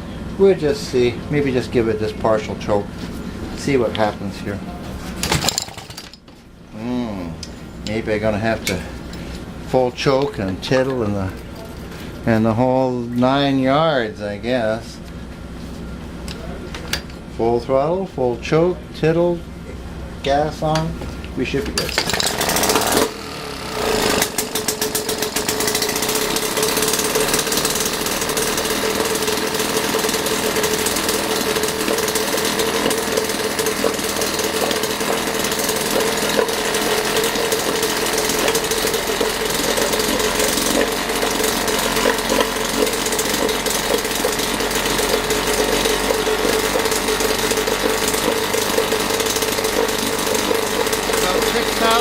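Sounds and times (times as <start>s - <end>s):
two-stroke outboard engine running: 21.9s - 52.0s.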